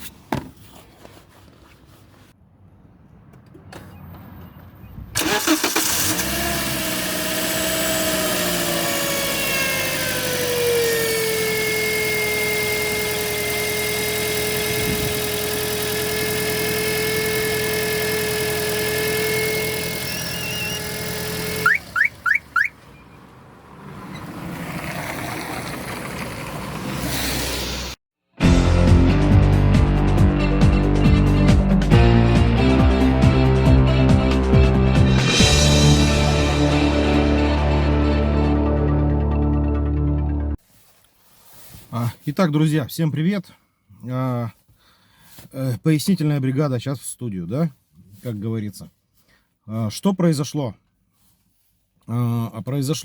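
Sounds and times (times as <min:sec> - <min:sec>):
car engine starting and running: 0:03.0 - 0:40.6
pitched engine hum: 0:05.2 - 0:28.0
quick chirps: 0:19.1 - 0:23.1.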